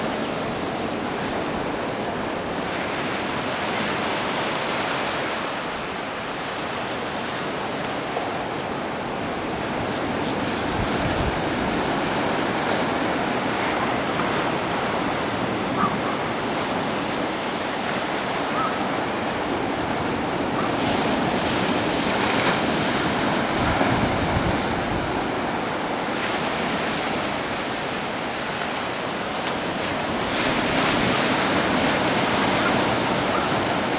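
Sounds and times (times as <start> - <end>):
ocean surf breaking: 9.0 - 33.9
wind buffeting microphone: 9.4 - 27.7.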